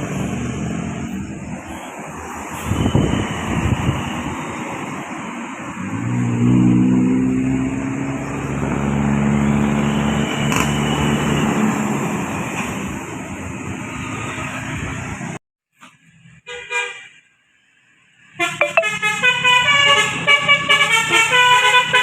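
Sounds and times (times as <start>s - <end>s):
bus engine passing: 0.0s - 15.4s
road and traffic noise: 0.0s - 22.0s.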